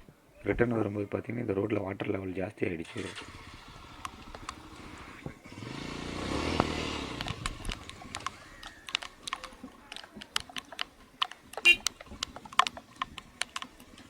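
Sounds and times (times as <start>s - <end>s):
vehicle engine passing by: 2.9s - 8.9s
sharp clicks and taps: 6.5s - 14.0s.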